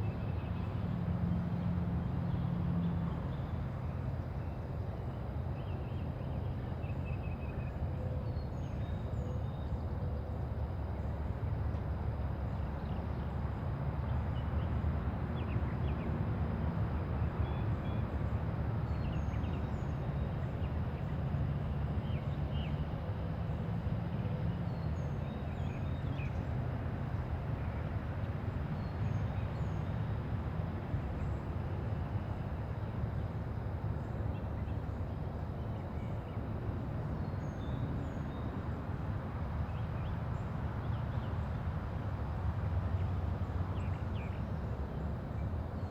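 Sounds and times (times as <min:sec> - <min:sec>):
distant traffic hum: 0:00.0 - 0:45.9.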